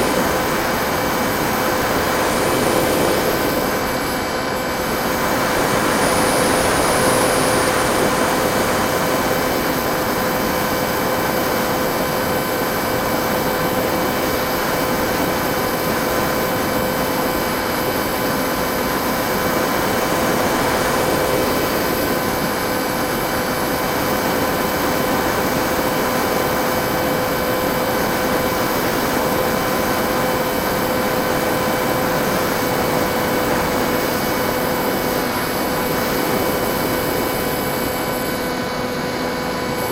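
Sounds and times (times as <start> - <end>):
rushing air: 0.0 - 10.0
electric motor propeller whine: 0.0 - 39.9.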